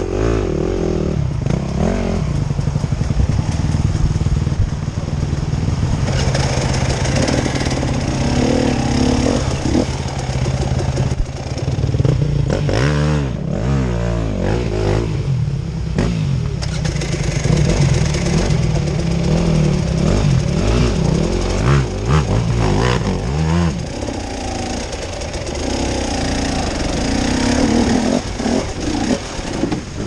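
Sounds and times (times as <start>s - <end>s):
off-road engine revving: 0.0s - 30.0s.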